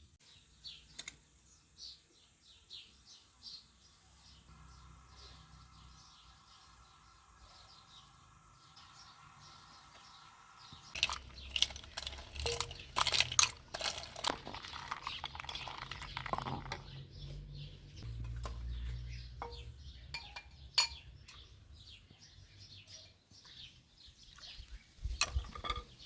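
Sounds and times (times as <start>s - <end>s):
dishes and cutlery clinking: 19.4s - 21.4s.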